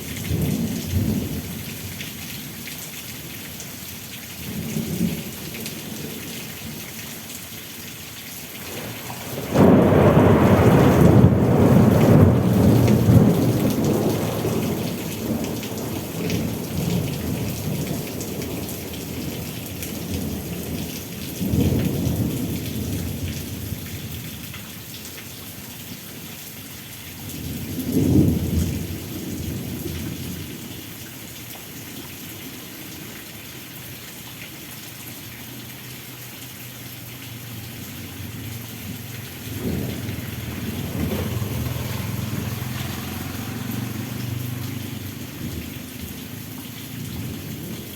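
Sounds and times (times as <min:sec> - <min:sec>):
rain falling steadily: 0:00.0 - 0:47.9
thunder rumbling: 0:08.6 - 0:17.8, 0:38.2 - 0:46.5.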